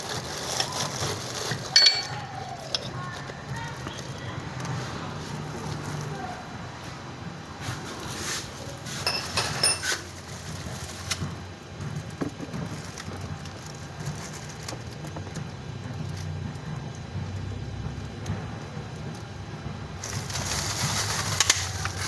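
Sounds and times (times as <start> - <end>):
metallic clinks and rattles: 1.6 - 2.9.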